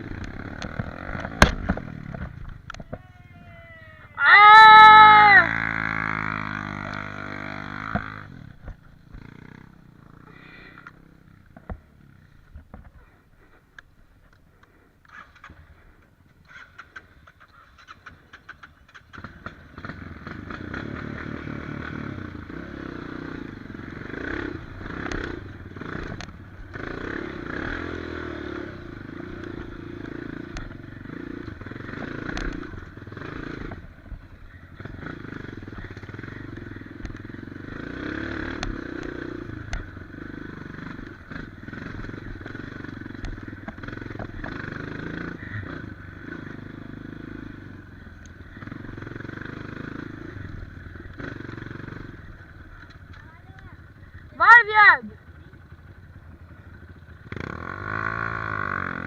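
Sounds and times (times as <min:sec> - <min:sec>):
dirt bike engine revving: 0:00.0 - 0:02.6, 0:04.0 - 0:12.4, 0:17.9 - 0:59.0
sharp knocks and clatter: 0:00.2 - 0:02.9.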